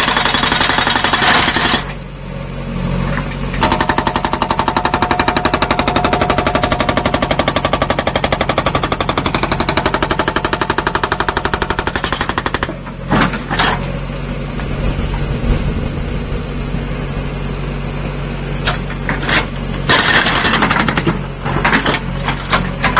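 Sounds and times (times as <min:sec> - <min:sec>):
hydraulic rock breaker hammering: 0:00.0 - 0:02.0, 0:03.1 - 0:14.0, 0:18.6 - 0:22.9
diesel engine running: 0:00.0 - 0:22.9.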